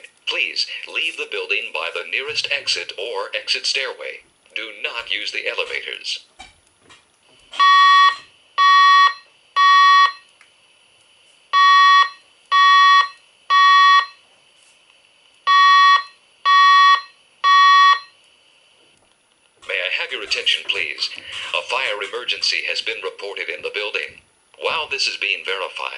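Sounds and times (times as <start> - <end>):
fire alarm beeps: 7.6 - 10.3, 11.5 - 14.2, 15.5 - 18.2.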